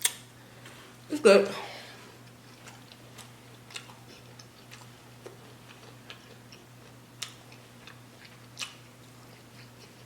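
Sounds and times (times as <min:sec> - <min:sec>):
low steady hum: 0:00.0 - 0:10.0
mouth clicks and smacks chewing: 0:02.3 - 0:10.0.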